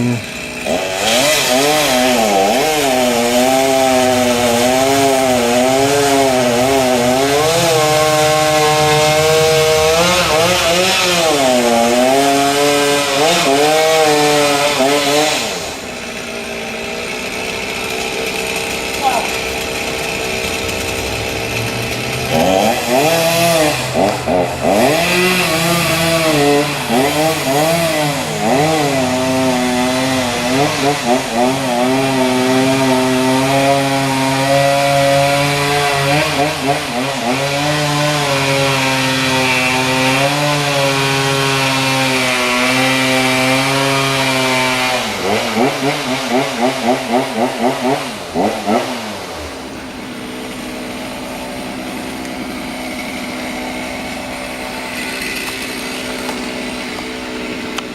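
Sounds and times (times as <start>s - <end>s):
chainsaw cutting wood: 0.0s - 57.9s.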